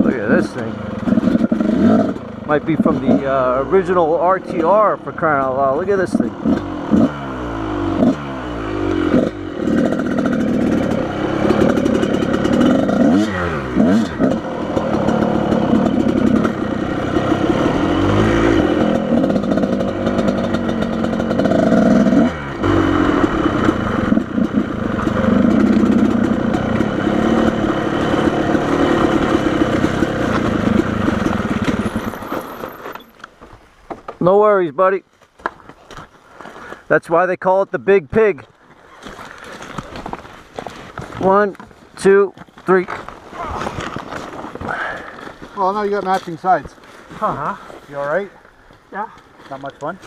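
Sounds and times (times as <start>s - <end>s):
motorcycle engine revving: 0.0s - 33.1s.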